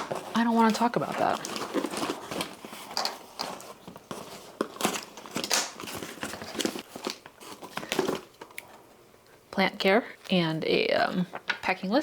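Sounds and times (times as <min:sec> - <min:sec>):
packing material crinkling: 0:00.0 - 0:08.8.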